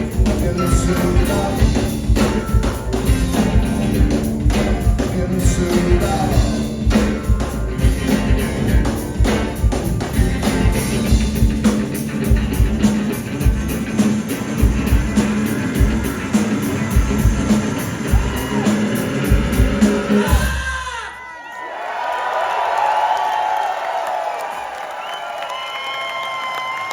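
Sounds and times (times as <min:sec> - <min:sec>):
heavy bass line: 0:00.0 - 0:20.6
steady drum beat: 0:00.0 - 0:20.8
rock band playing: 0:00.0 - 0:21.0.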